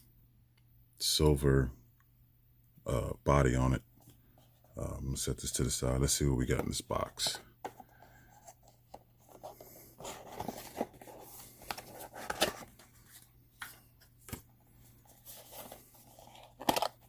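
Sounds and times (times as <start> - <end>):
cardboard packaging rustling: 7.7 - 17.0.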